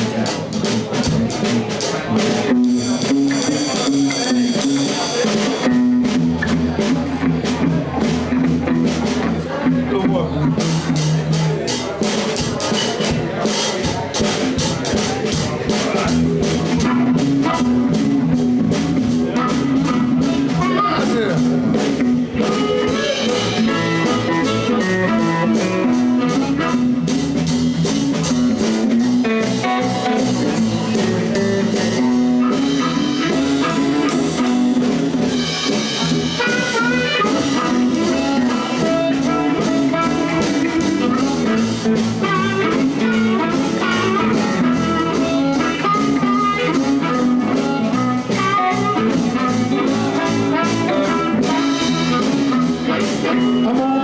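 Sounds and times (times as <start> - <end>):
electric guitar lines: 0.0 - 11.4, 14.5 - 54.0
bass: 0.0 - 54.0
drum kit steady beat: 0.0 - 54.0.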